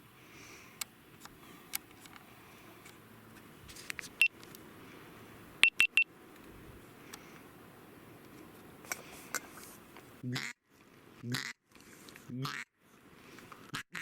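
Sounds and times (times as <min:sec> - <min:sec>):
short high electronic beeps: 0:05.6 - 0:06.1.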